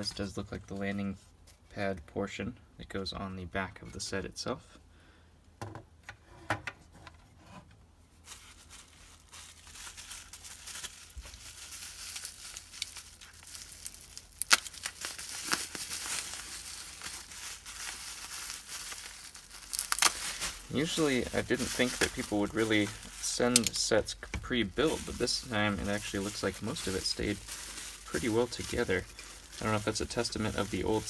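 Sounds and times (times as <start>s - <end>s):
plastic wrap crinkling and tearing: 8.2s - 31.0s.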